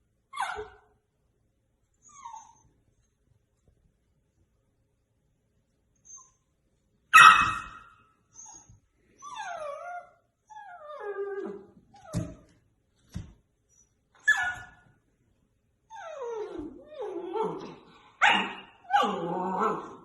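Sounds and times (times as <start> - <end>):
puppy whining: 0.3 - 0.9, 1.9 - 3.0, 6.0 - 6.6, 7.2 - 12.6, 13.6 - 14.9, 15.8 - 20.0
puppy yelping: 7.1 - 12.4, 14.2 - 14.8.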